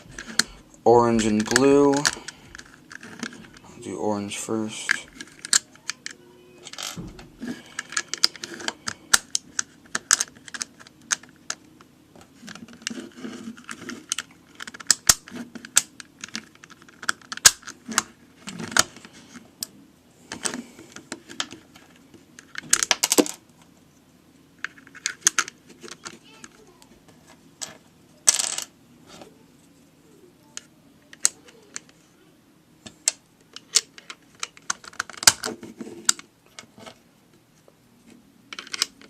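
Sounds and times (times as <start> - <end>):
plastic puzzle pieces clicking: 4.9 - 7.0, 7.7 - 11.6, 12.5 - 18.1, 24.6 - 26.6, 31.1 - 32.0, 38.5 - 39.0.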